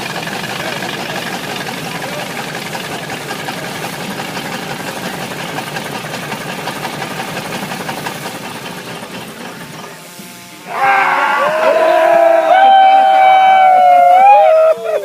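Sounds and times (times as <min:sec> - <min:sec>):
engine knocking: 0:00.0 - 0:10.0.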